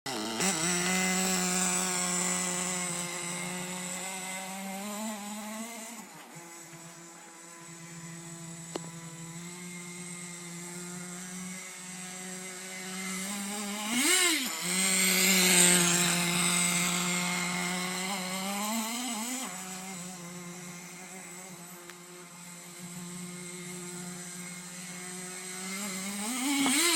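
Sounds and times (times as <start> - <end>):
small nitro engine running: 0.1 - 26.9.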